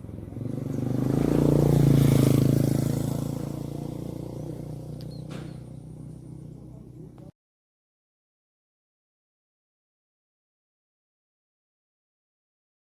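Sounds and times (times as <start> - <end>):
motor vehicle passing by: 0.0 - 7.3.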